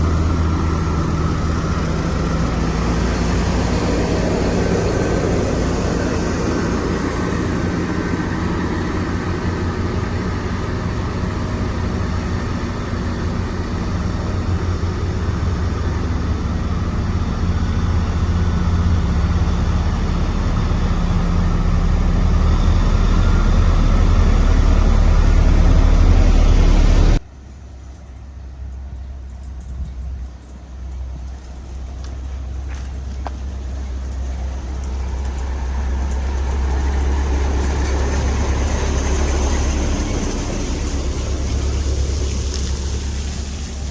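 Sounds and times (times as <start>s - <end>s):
diesel engine running: 0.0s - 43.9s.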